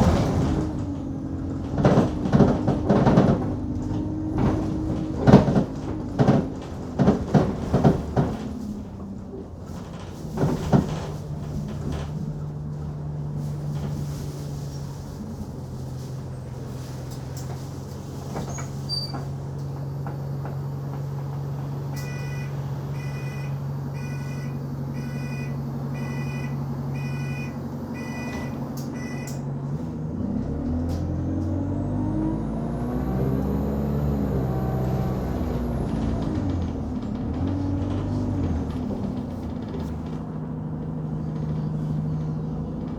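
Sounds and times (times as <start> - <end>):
bus engine idling: 0.0 - 42.9
bus engine revving: 0.0 - 42.9
electronic beeps: 22.0 - 29.3.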